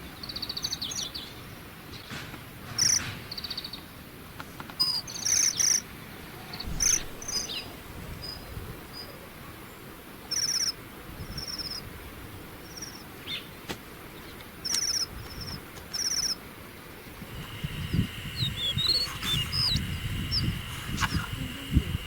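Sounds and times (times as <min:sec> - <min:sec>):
songbird buzzy trills: 0:02.8 - 0:04.0, 0:04.8 - 0:22.0
low rumbling: 0:06.5 - 0:09.3, 0:17.1 - 0:22.0
quick bird chirps: 0:12.7 - 0:16.4, 0:18.1 - 0:20.6
steady high-pitched tone: 0:17.2 - 0:22.0.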